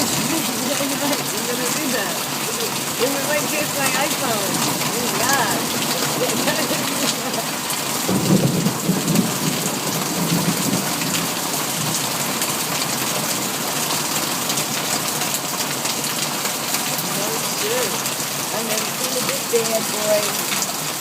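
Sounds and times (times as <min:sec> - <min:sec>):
heavy rain pouring: 0:00.0 - 0:21.0
low rumble of thunder: 0:07.9 - 0:12.1.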